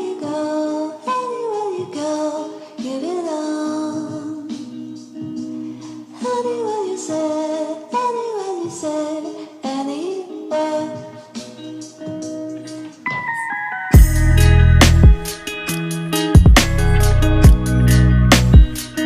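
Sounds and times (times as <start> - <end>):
woman singing: 0.0 - 13.7
instrumental accompaniment: 10.3 - 19.0.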